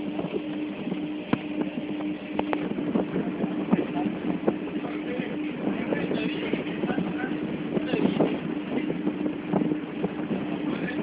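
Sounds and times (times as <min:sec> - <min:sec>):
ship engine hum: 0:00.0 - 0:11.0.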